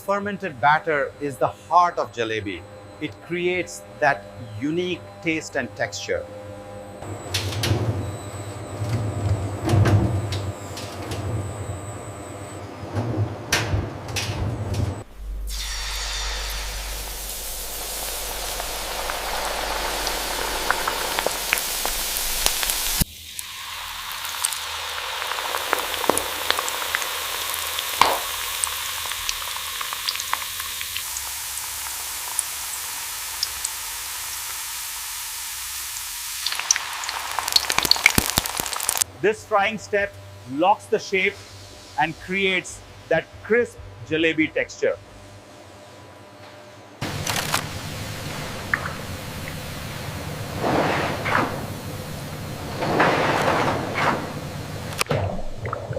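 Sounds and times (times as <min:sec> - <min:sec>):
machinery humming: 0:00.0 - 0:55.1
batter sizzling in hot oil: 0:15.5 - 0:39.1.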